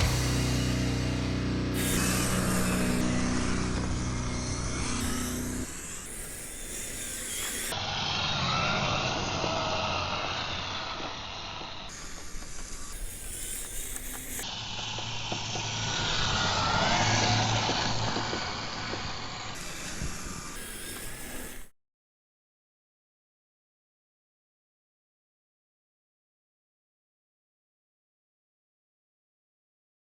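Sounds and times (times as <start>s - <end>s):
electric motor whine: 0.0s - 21.7s.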